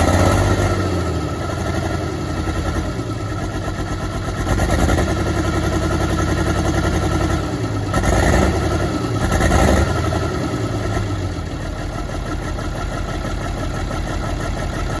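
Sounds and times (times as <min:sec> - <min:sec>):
misfiring diesel engine revving: 0:00.0 - 0:03.4, 0:04.0 - 0:11.6.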